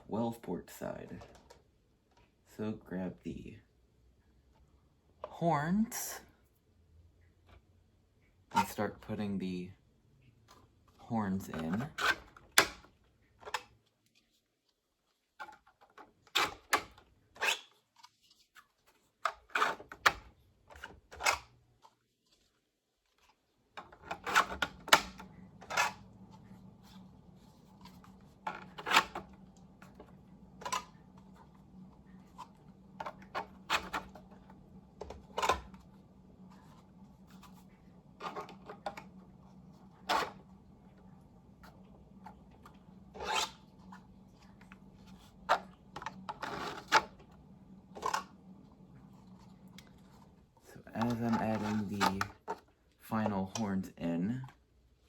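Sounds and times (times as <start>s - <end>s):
steady low hum: 24.0s - 55.0s.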